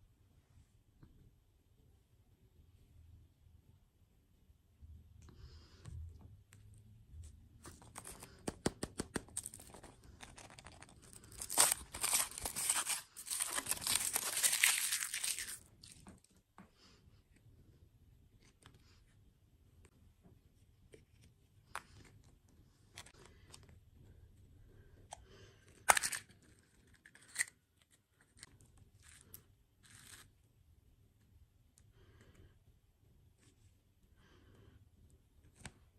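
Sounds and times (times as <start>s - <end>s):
clicks and taps: 8.0s - 9.4s
food packaging tearing and crinkling: 9.3s - 16.0s, 25.9s - 26.3s.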